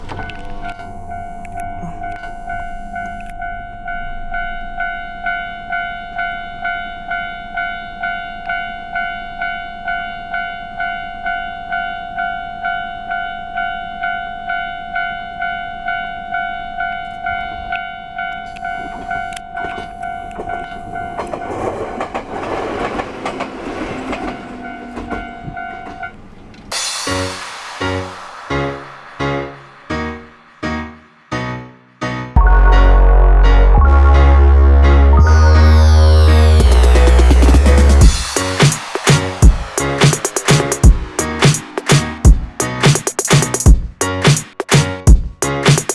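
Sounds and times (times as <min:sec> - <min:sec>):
train passing: 0:18.6 - 0:32.1, 0:35.2 - 0:43.7.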